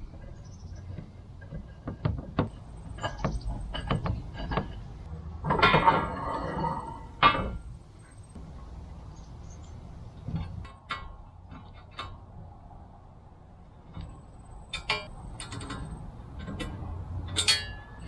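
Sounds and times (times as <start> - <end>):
scraping and rustling: 0.0 - 12.7
hardware clicks and knocks: 0.1 - 7.8, 9.7 - 12.4, 13.8 - 18.0.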